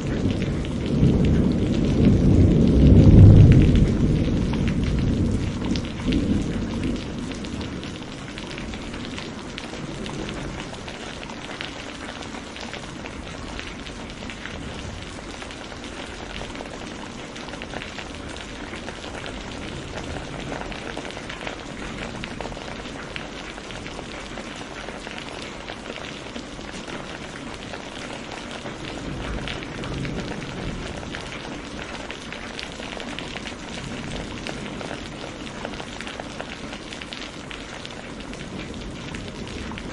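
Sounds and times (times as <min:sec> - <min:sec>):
thunder rumbling: 0:00.0 - 0:26.0, 0:26.9 - 0:39.9
steady rain: 0:00.0 - 0:39.9.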